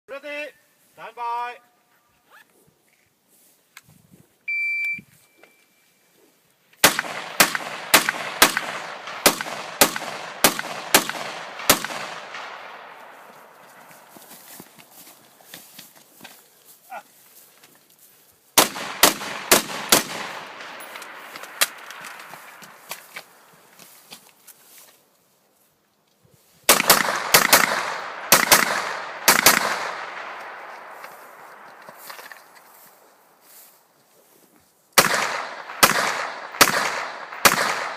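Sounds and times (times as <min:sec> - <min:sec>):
shot timer beep: 0:04.5 - 0:05.7
rifle shots with echo: 0:06.8 - 0:14.1, 0:18.6 - 0:23.4, 0:26.7 - 0:32.2, 0:35.0 - 0:37.9.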